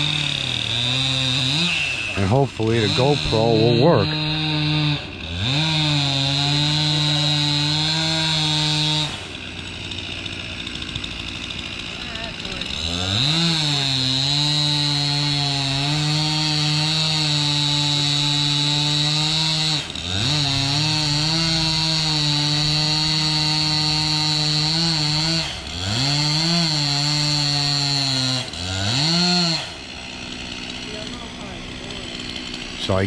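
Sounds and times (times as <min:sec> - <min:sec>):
chainsaw cutting wood: 0:00.0 - 0:33.0.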